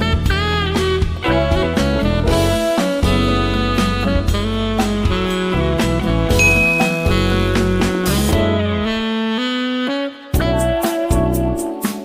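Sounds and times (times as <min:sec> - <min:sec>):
bass line: 0:00.0 - 0:09.4.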